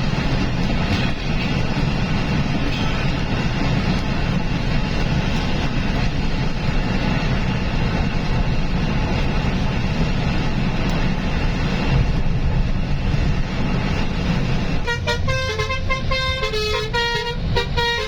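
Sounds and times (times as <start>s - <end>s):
truck engine and road rumble: 0.0s - 18.0s.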